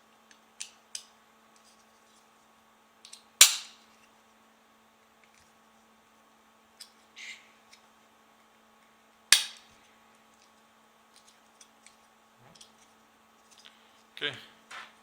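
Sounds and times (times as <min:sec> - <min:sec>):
faint steady hum: 0:00.0 - 0:15.0
loud sharp snap: 0:03.4 - 0:03.8, 0:09.3 - 0:09.7.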